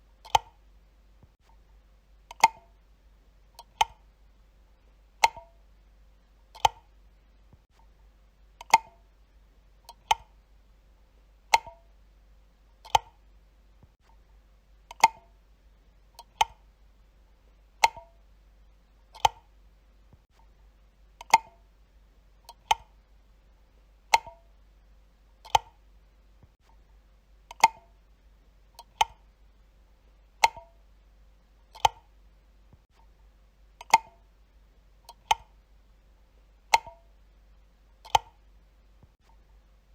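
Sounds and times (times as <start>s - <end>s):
wall light switch clicking: 11.5s - 11.8s, 30.4s - 30.7s, 31.7s - 32.0s, 33.8s - 34.2s, 36.7s - 37.0s.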